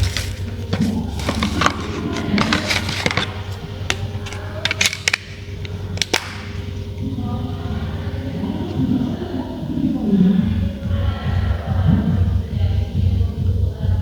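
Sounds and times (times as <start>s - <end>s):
phone and plastic parts clicking: 0.0s - 6.7s
steady low hum: 0.0s - 14.0s.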